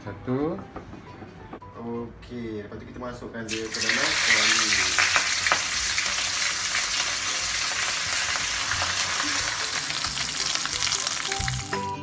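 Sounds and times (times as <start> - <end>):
fish sizzling in hot oil: 3.5 - 11.7
guitar music: 9.4 - 12.0.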